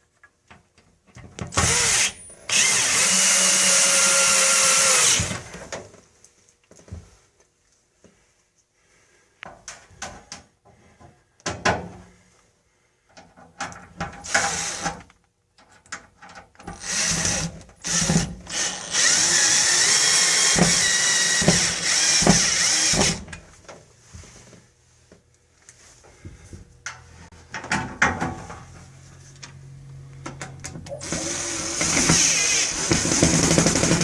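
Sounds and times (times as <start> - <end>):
power drill driving screw: 1.5 - 5.5, 14.2 - 15.1, 16.6 - 23.3, 31.0 - 34.0.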